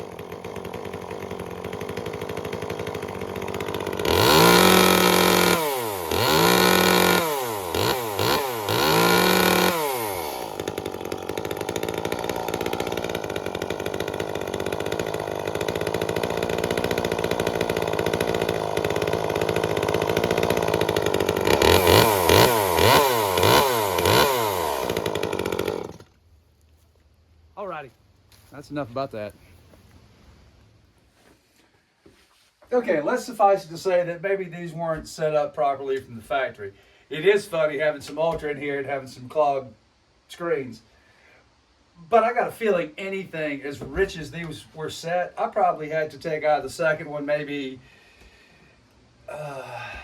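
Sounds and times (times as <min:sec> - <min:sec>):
chainsaw engine revving and idling: 0:00.0 - 0:26.2.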